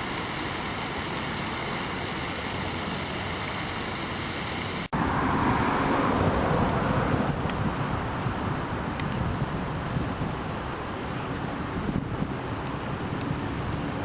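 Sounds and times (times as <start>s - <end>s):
rushing outdoor background noise: 0.0s - 14.0s.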